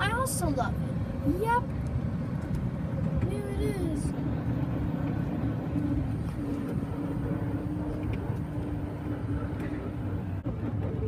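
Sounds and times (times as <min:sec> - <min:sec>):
wheels rumbling on road: 0:00.0 - 0:11.0
golf cart motor hum: 0:04.1 - 0:11.0.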